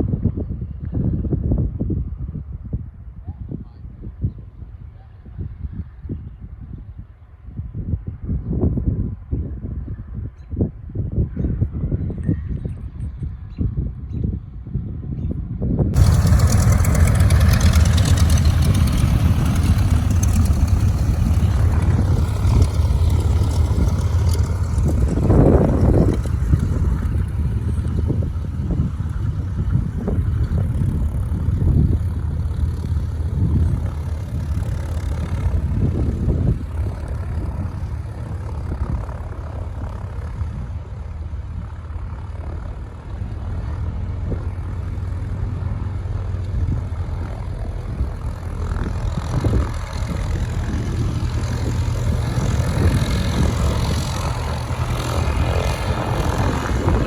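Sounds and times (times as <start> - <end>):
propeller aircraft engines running: 15.9 - 57.0.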